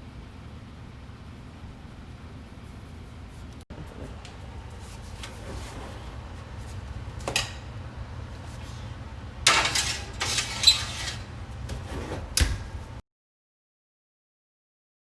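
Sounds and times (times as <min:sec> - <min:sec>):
kitchen clattering: 0:05.1 - 0:13.0.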